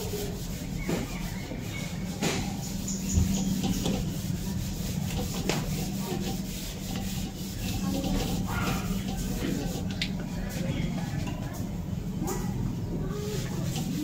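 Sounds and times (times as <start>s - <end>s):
faint scraping: 0.0s - 14.0s
low electrical hum: 0.0s - 14.0s.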